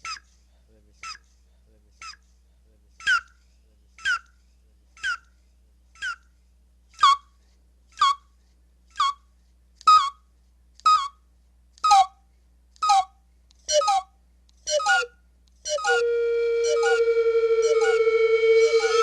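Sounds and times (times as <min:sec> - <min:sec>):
whistle-like chirps: 0:14.7 - 0:15.1, 0:15.7 - 0:19.0
steady held tone: 0:15.7 - 0:19.0.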